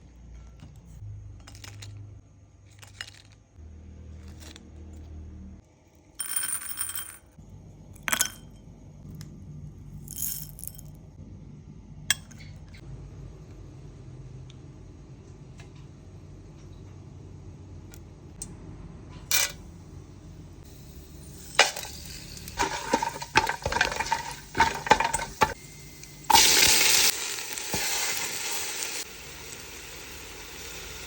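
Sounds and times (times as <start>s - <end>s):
low steady hum: 6.2s - 28.2s
utensils and dishes clinking: 21.4s - 25.6s.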